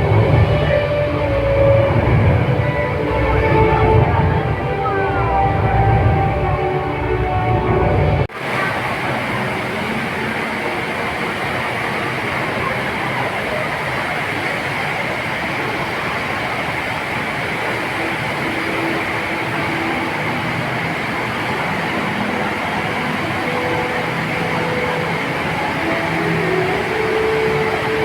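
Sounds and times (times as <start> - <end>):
indoor waterfall rushing: 0.0 - 28.0.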